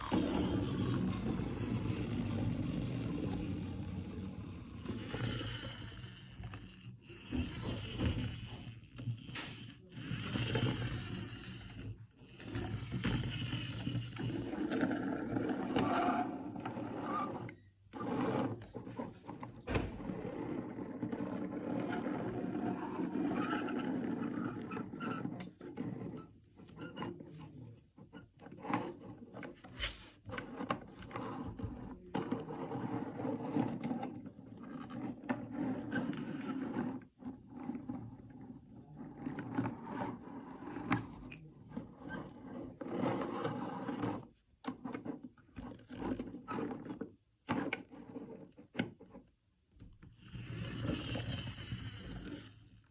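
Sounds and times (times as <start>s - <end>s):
plastic toys scraping and rattling: 0.0s - 19.6s, 50.1s - 52.9s.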